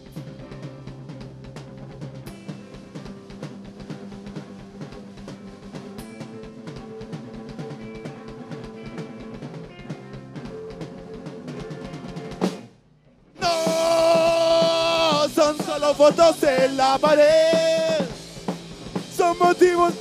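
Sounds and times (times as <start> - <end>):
drum kit beat: 0.0 - 12.8, 13.4 - 20.0
rock band playing: 0.0 - 20.0.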